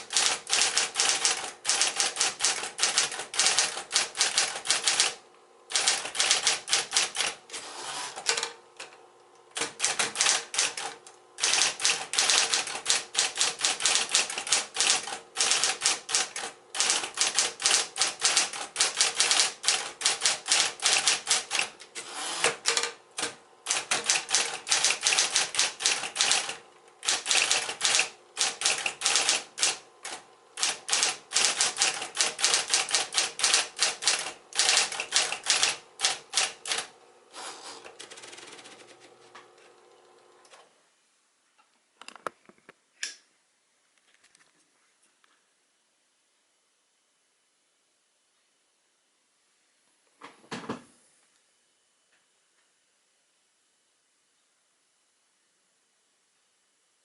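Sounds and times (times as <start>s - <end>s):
electric typewriter keystroke clacks: 0.0s - 8.9s, 9.5s - 36.9s, 37.8s - 39.2s
faint steady hum: 0.0s - 57.0s.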